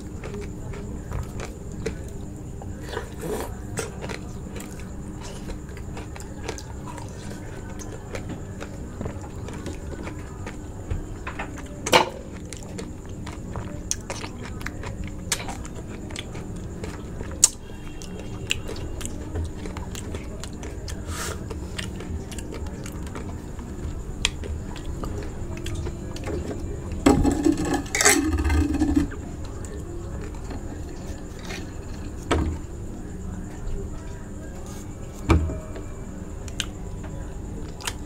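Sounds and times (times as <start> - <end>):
crunchy chewing: 0.0 - 38.0.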